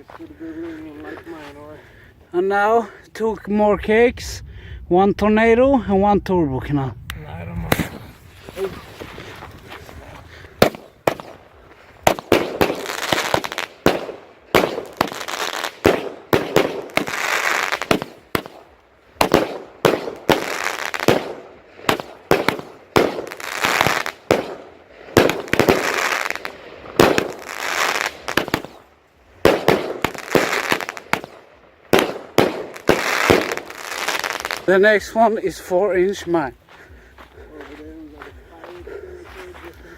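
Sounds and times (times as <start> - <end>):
firework shots: 7.0 - 9.4, 10.6 - 34.8.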